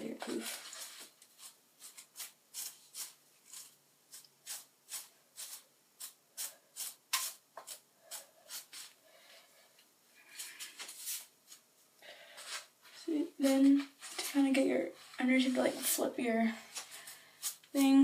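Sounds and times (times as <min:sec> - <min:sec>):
hairbrush strokes through hair: 0:10.4 - 0:11.6, 0:12.4 - 0:18.0.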